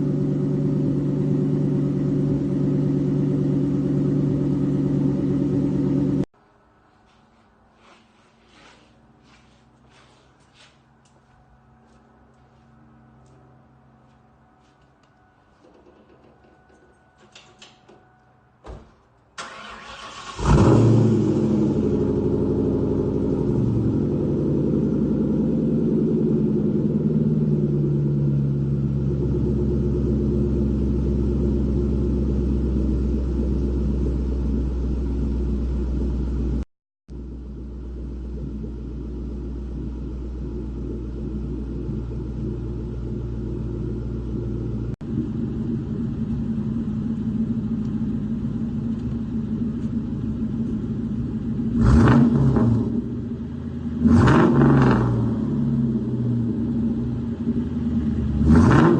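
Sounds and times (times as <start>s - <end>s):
car engine idling: 0.0s - 6.3s, 19.4s - 54.2s.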